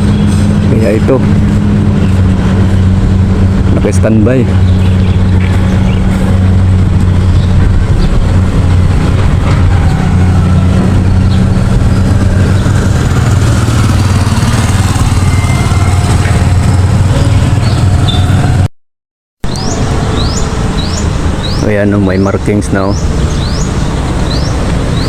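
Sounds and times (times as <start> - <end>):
engine running steadily: 0.0 - 18.7.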